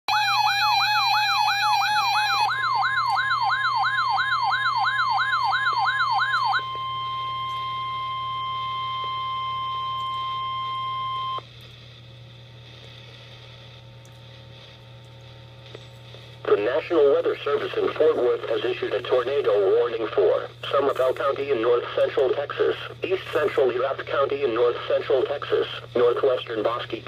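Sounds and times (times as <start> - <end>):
electronic siren wail: 0.1 - 11.4
steady alarm tone: 0.1 - 11.4.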